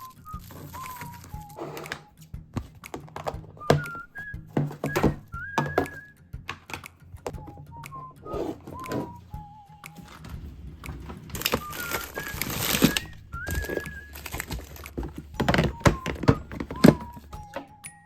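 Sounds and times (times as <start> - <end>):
packaging rustling: 0.0 - 6.1, 8.3 - 17.7
background music with whistling: 0.0 - 18.0
containers knocking and thunking: 0.0 - 18.0.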